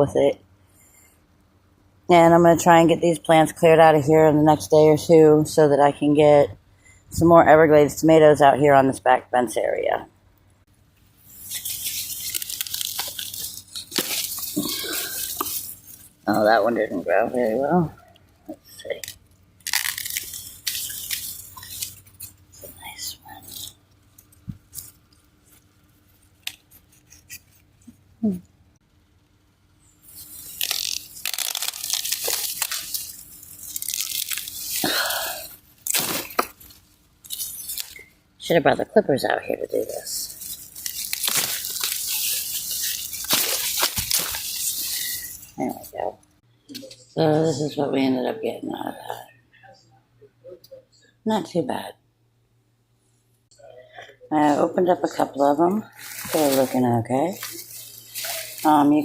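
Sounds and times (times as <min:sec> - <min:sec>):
corn stalks cracking: 0:11.3 - 0:16.0, 0:18.9 - 0:22.3, 0:30.1 - 0:38.1, 0:40.3 - 0:45.4, 0:55.9 - 0:58.8
dry corn leaves rustling: 0:11.3 - 0:17.5, 0:18.8 - 0:23.7, 0:30.0 - 0:38.0, 0:40.1 - 0:45.7, 0:55.8 - 0:59.0.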